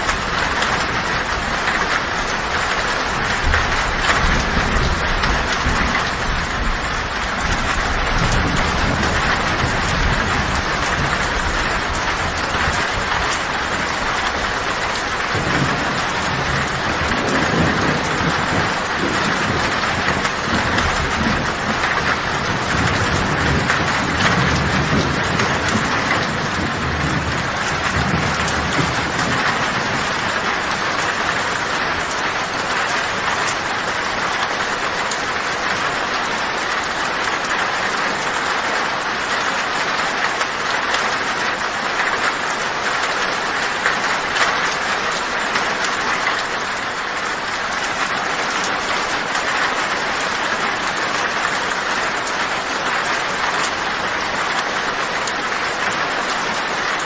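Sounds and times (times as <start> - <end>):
heavy rain on a tin roof: 0.0 - 57.0
low thunder rumble: 0.1 - 34.2.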